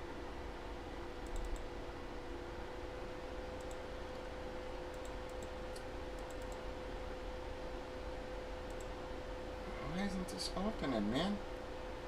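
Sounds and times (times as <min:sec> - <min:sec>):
electrical hum: 0:00.0 - 0:12.0
faint short clicks: 0:01.2 - 0:01.7.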